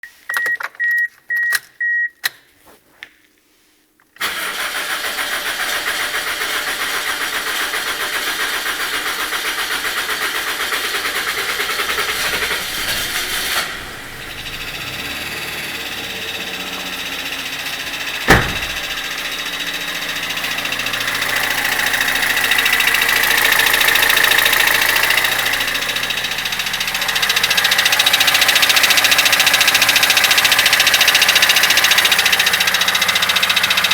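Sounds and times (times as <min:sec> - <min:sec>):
car engine starting: 0:04.2 - 0:33.9
car engine idling: 0:05.4 - 0:33.9
rattling knock from engine: 0:18.3 - 0:19.2.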